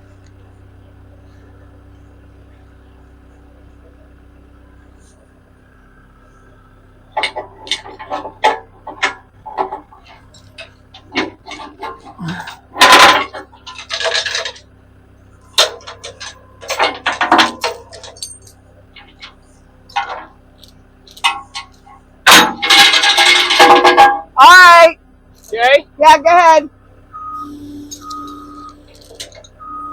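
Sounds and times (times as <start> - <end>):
metal clinks and knocks: 7.1 - 24.4, 27.4 - 29.9.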